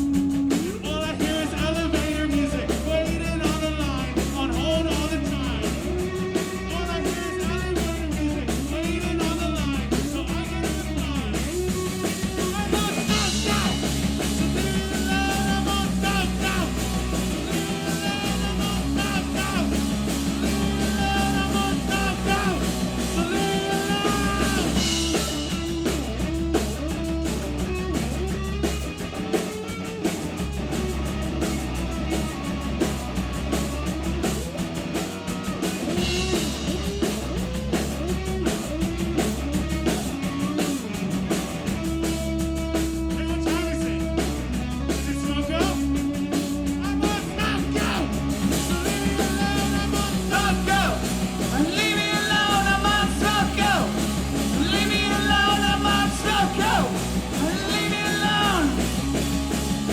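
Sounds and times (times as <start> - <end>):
person singing: 0.0 - 25.8, 46.7 - 59.0
rock band playing: 0.0 - 59.9.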